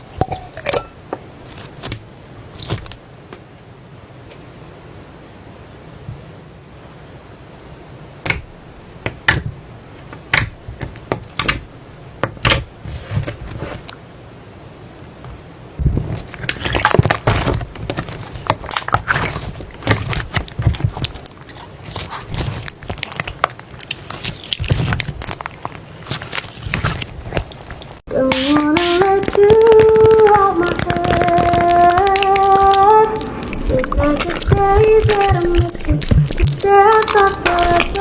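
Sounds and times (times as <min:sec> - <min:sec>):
slime squishing: 0:01.4 - 0:03.0, 0:15.8 - 0:38.0
slime popping and crackling: 0:15.8 - 0:38.0.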